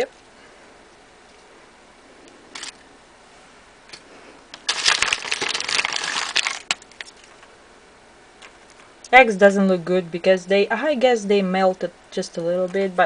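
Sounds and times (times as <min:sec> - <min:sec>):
foil wrapper crinkling: 0:04.6 - 0:07.5.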